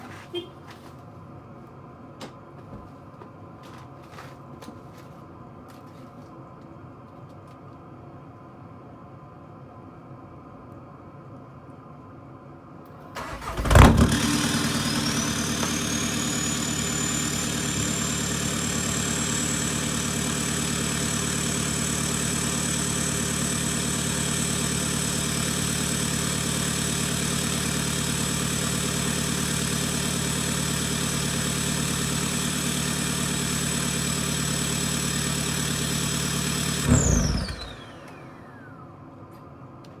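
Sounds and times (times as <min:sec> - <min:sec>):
diesel engine starting and idling: 0:13.0 - 0:39.2.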